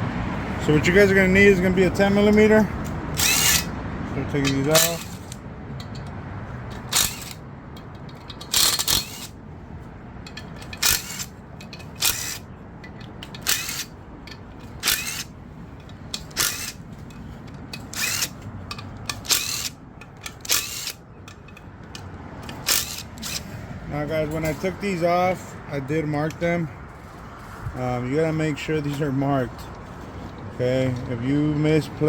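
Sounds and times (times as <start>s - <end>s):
ratchet loosening bolts: 2.2s - 9.4s, 10.2s - 23.6s.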